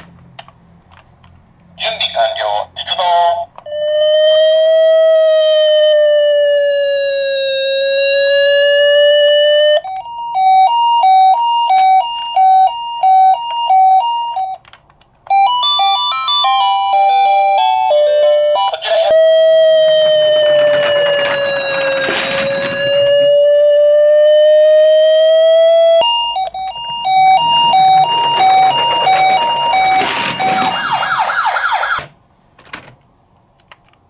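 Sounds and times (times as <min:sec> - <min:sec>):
ambulance siren: 0:03.7 - 0:14.6, 0:15.3 - 0:32.1
stepped beeping notes: 0:25.0 - 0:30.9.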